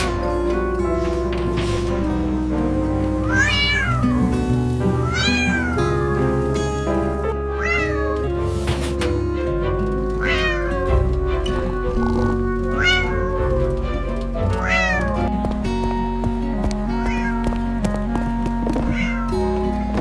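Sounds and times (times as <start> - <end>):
background music: 0.0 - 20.0
cat meowing: 3.2 - 4.3, 5.0 - 6.3, 7.5 - 8.4, 10.2 - 11.0, 12.3 - 13.7, 14.6 - 15.3, 17.0 - 17.4, 18.8 - 19.4.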